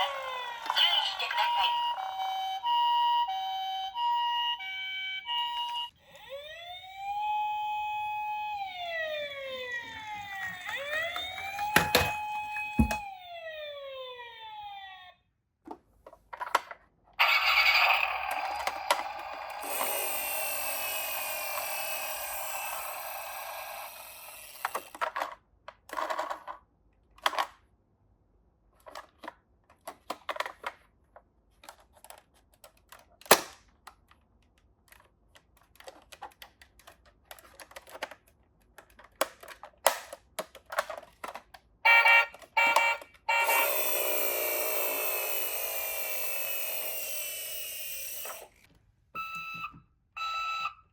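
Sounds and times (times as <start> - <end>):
toy electronic siren: 0.0 - 15.3, 17.2 - 25.1, 41.8 - 50.9
toy car rolling rattle: 17.2 - 26.6, 42.3 - 48.7.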